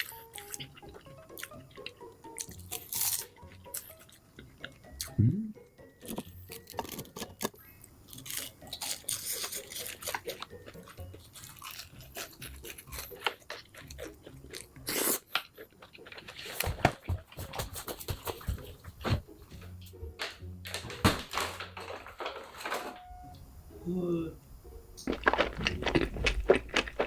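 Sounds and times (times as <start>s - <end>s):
person chewing food: 0.0s - 5.4s, 6.0s - 17.6s, 25.0s - 27.0s.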